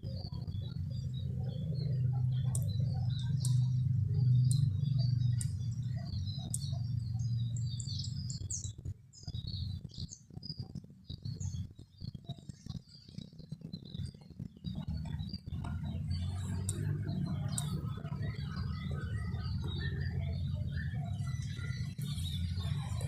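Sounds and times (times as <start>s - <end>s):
loud low rumble: 0.0s - 8.5s, 13.8s - 23.0s
small birds chirping: 0.0s - 23.0s.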